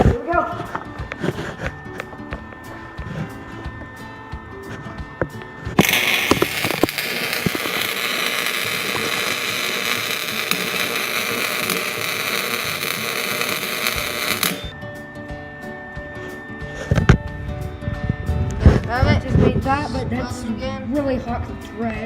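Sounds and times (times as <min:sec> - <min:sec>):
arc welding crackling hiss: 0:04.7 - 0:14.8.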